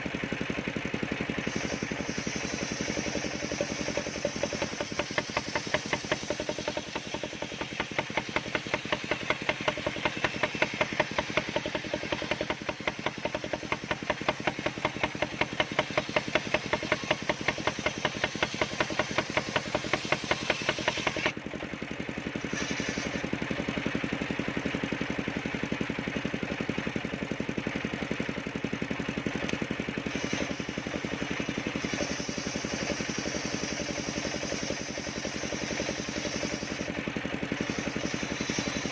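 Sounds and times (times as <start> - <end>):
sawmill engine pulsing: 0.0 - 38.9.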